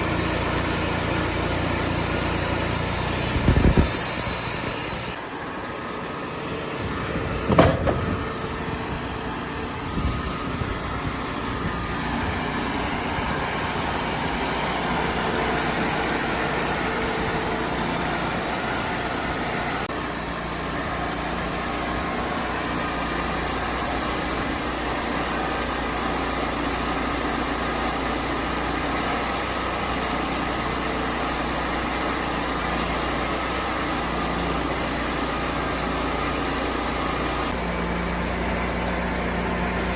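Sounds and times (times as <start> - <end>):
sawmill engine running: 0.0 - 39.9
sharp knock: 7.5 - 8.4.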